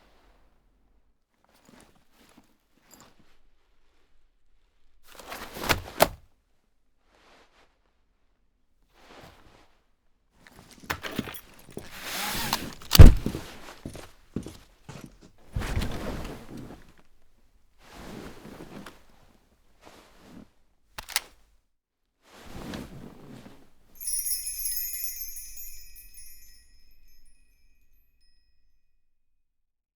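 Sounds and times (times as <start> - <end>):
high chime-like ringing: 24.0 - 28.4.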